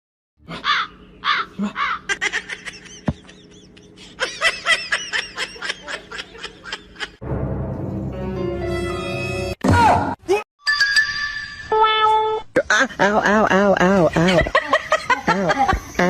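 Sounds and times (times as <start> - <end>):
high-pitched giggling laughter: 0.6 - 7.2, 12.6 - 16.0.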